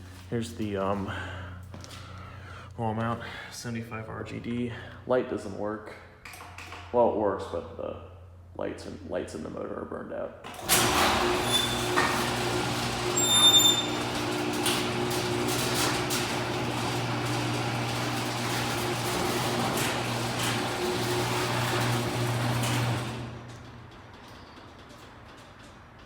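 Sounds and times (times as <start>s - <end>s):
garage door opener motor hum: 10.4s - 26.0s
high squeak: 11.4s - 11.9s, 13.2s - 14.0s.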